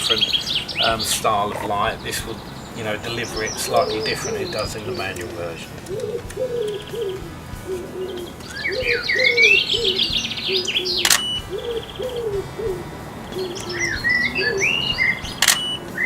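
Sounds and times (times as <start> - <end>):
pigeon cooing: 0.0 - 16.0
small songbirds chirping: 0.0 - 16.0
camera shutter click: 11.0 - 11.4, 15.4 - 15.8.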